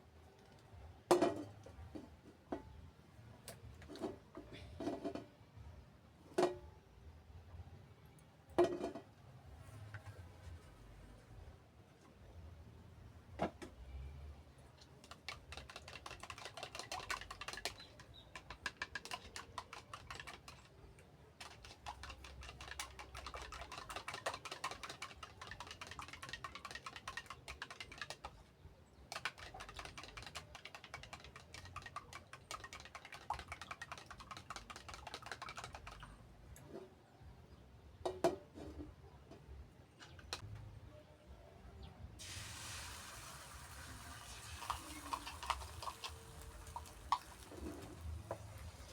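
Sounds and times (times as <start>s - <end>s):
rapid clicking and tapping: 15.0s - 20.7s, 21.4s - 28.4s, 29.1s - 36.1s.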